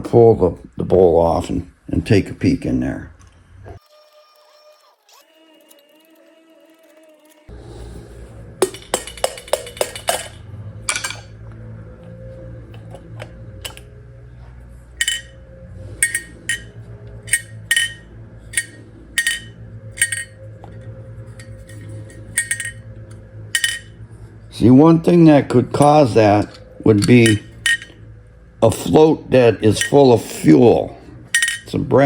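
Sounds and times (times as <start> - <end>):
steady low hum: 7.5 - 32.0
small metal parts clinking: 8.6 - 11.3, 13.6 - 13.9, 15.0 - 15.4, 16.0 - 22.9, 23.6 - 24.0, 26.5 - 28.0, 29.7 - 30.1, 31.3 - 31.8.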